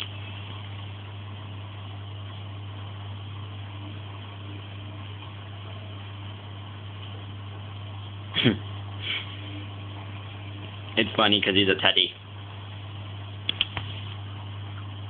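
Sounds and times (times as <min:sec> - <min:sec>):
washing machine spinning: 0:00.0 - 0:15.0.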